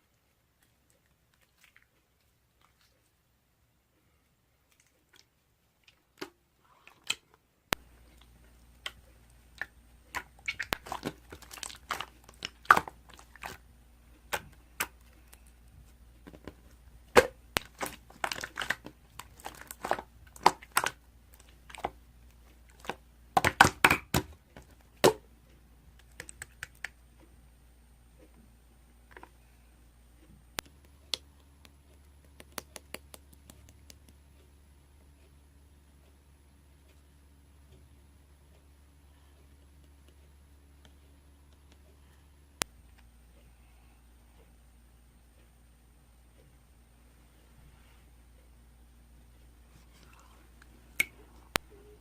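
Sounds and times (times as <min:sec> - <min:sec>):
faint steady hum: 0:00.0 - 0:52.0
crackling and crunching clicks: 0:07.0 - 0:27.4, 0:30.2 - 0:35.4.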